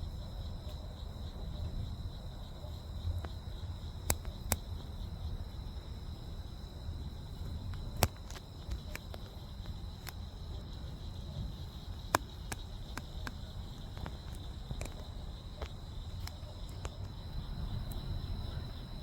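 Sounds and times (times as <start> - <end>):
crickets trilling: 0.0 - 19.0
low rumbling background noise: 0.0 - 19.0
sharp clicks: 4.0 - 4.6, 7.7 - 9.4.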